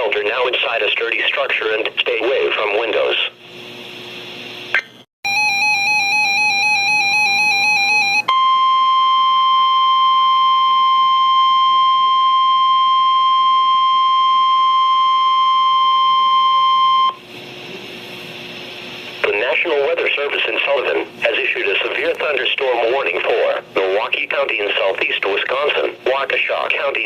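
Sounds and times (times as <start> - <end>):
steady alarm tone: 5.3 - 17.2
low radio hiss: 17.3 - 27.0.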